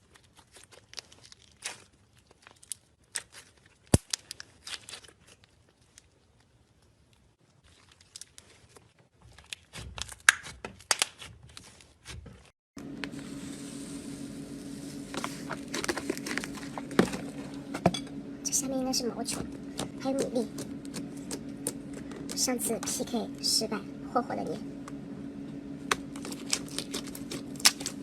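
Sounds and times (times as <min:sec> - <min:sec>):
steady low hum: 0:12.8 - 0:28.0
slime squishing and popping: 0:25.9 - 0:28.0.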